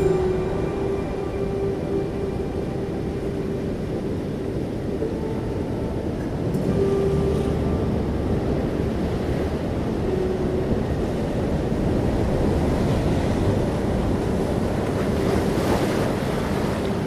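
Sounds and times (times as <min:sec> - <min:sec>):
sea surf on rocks: 0:00.0 - 0:17.0
wind: 0:00.0 - 0:17.0
wave breaking: 0:06.3 - 0:17.0.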